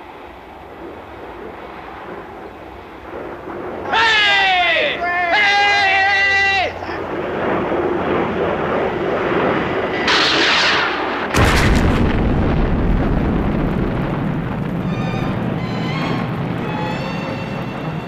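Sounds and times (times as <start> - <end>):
jet aircraft roar: 0.0 - 18.0
loud rumbling explosion: 7.0 - 17.8
orchestral music: 14.8 - 18.0.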